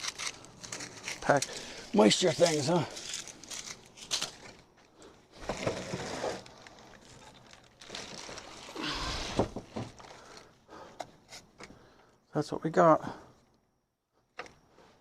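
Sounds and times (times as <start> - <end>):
packaging rustling: 0.0 - 4.7, 5.4 - 10.5.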